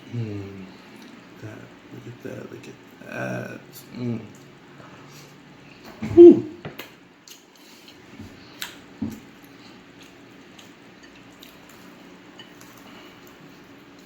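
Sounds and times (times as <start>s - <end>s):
quiet chewing: 6.8s - 14.0s.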